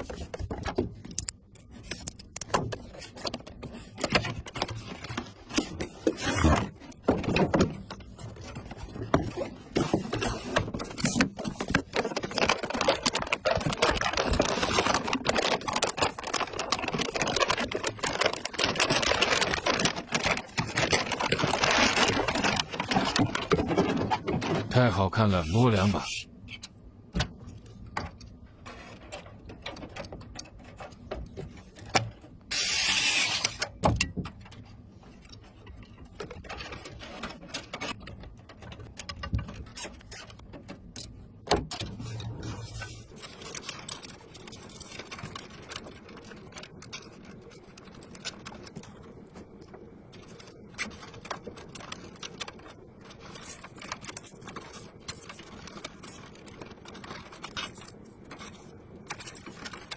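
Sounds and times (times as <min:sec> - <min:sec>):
loud burst of hiss: 0:32.5 - 0:33.5.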